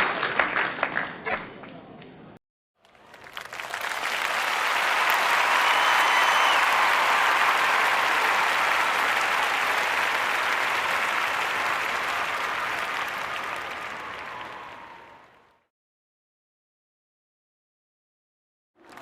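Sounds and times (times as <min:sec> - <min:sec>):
audience applauding: 0:02.8 - 0:15.6, 0:18.8 - 0:19.0.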